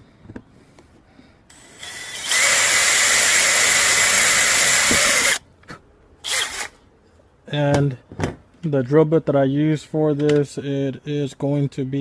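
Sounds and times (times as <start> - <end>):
power drill boring: 1.5 - 5.4, 6.2 - 6.7.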